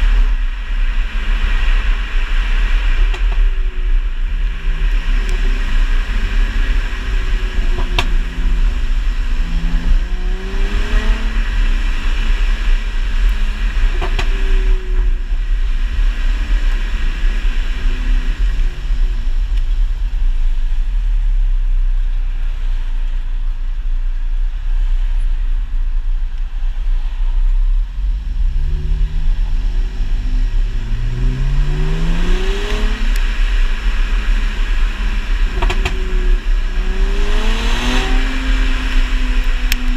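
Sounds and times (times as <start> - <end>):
car engine accelerating: 0.0 - 39.9
road and wind rumble: 0.0 - 39.9
sharp exhaust pops: 13.3 - 14.6, 35.4 - 36.4.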